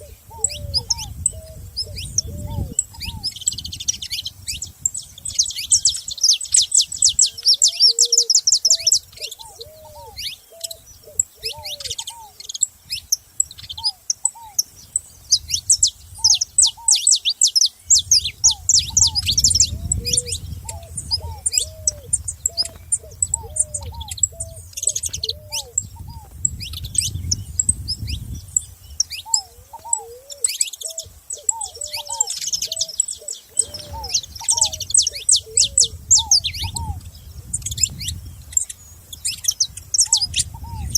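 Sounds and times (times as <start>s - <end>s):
finches chirping: 0.0s - 40.9s
lower bird call: 0.0s - 40.9s.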